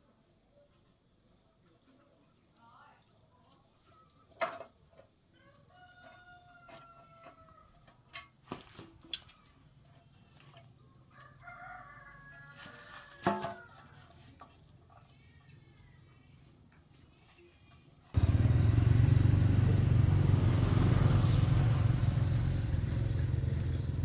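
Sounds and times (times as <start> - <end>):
rooster crowing: 5.4 - 7.8, 11.1 - 14.1, 18.2 - 24.0.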